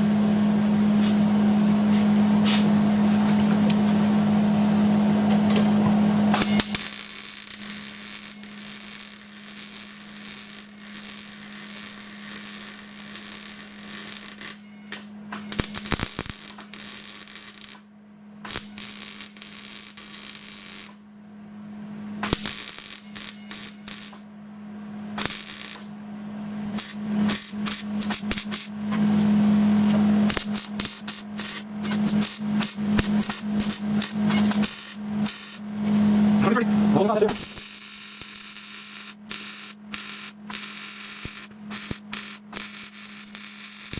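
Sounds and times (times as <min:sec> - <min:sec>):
steady low hum: 0:00.0 - 0:43.9
welding arc crackling and hissing: 0:06.4 - 0:17.9, 0:18.5 - 0:21.0, 0:22.2 - 0:24.2, 0:25.1 - 0:25.9, 0:26.6 - 0:36.1, 0:36.9 - 0:43.9.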